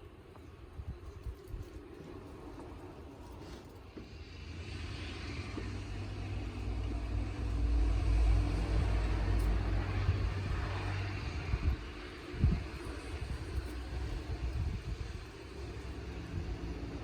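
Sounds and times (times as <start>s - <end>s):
vehicle engine hum: 2.5s - 17.0s
tyre hiss: 3.4s - 17.0s.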